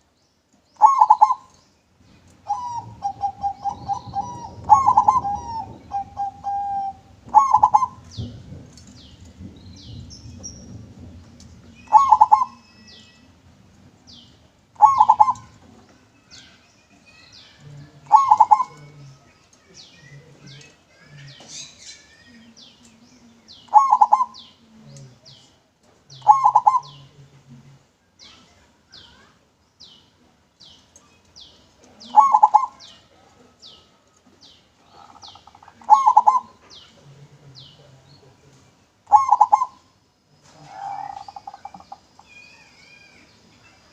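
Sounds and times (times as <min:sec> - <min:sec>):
dove cooing: 0:00.8 - 0:01.5, 0:02.4 - 0:10.7, 0:11.6 - 0:13.0, 0:14.8 - 0:15.6, 0:17.7 - 0:19.1, 0:23.5 - 0:24.6, 0:26.1 - 0:27.2, 0:32.0 - 0:32.9, 0:34.8 - 0:37.0, 0:39.1 - 0:42.2.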